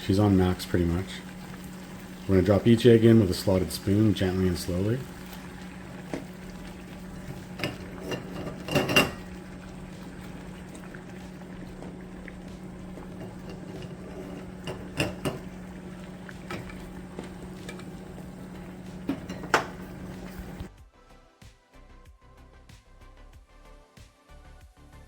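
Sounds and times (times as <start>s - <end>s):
water boiling in a pot: 0.0s - 20.7s
spoon clinking against pot: 7.5s - 9.4s, 13.0s - 20.6s.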